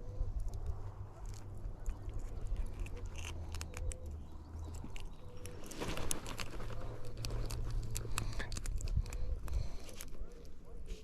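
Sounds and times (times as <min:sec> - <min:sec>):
steady low rumble: 0:00.0 - 0:11.0
small clicks and scrapes: 0:00.4 - 0:11.0
rustling: 0:04.7 - 0:11.0.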